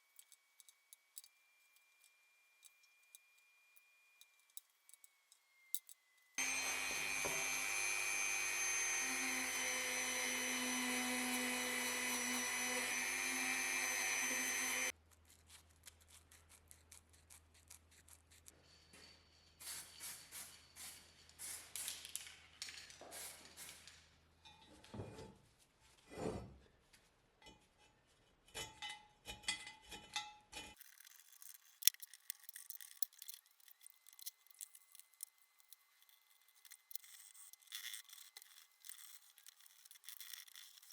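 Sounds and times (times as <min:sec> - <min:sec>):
power tool running: 0:06.4 - 0:14.9
parts rubbing and clicking: 0:29.3 - 0:40.9.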